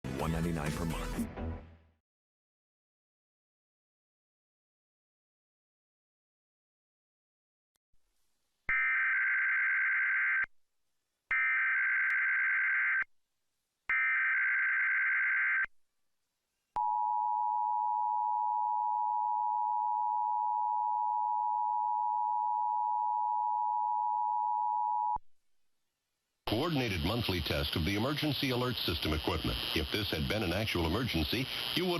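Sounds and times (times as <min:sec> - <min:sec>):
digital data bursts: 0:26.9 - 0:31.9.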